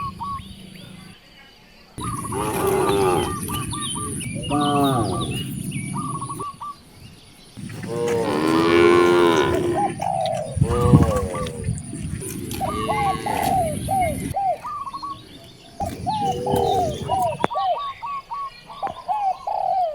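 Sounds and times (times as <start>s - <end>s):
bird chirping: 0.0s - 19.9s
cows mooing: 2.0s - 6.1s, 7.6s - 14.4s.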